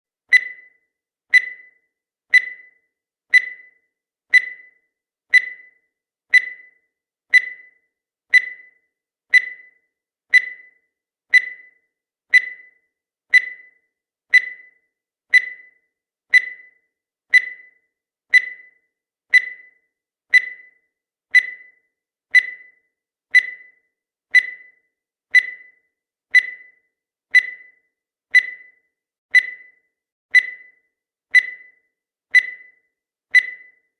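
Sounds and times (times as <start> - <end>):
high-pitched timer pings: 0.3 - 33.9.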